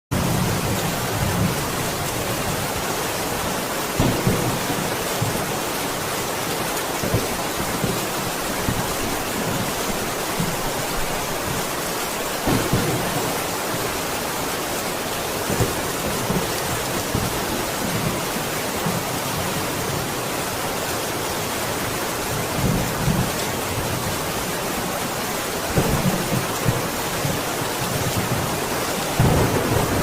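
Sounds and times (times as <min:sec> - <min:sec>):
heavy rain hissing: 0:00.2 - 0:30.0
low thunder rumbles: 0:12.4 - 0:13.8, 0:25.7 - 0:30.0.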